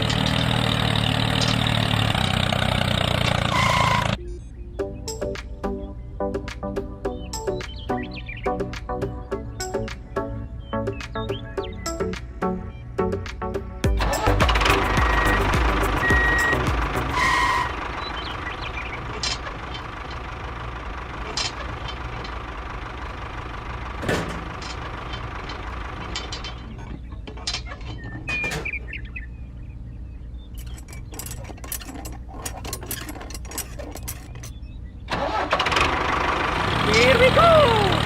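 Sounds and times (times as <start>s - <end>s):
engine idling: 0.0s - 4.2s, 13.8s - 27.2s, 30.5s - 38.0s
sharp clicks and knocks: 30.6s - 34.6s.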